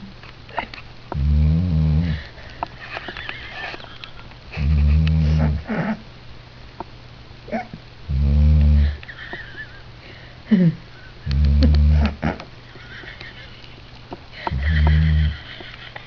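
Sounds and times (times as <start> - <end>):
dog snoring: 1.2 - 2.2, 4.6 - 5.9, 8.1 - 9.0, 11.3 - 12.4, 14.5 - 15.4.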